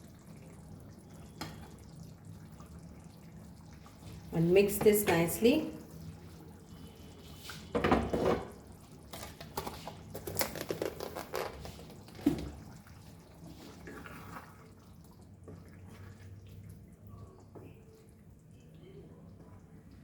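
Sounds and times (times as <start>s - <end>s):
wet gravy sounds: 0.0s - 20.0s.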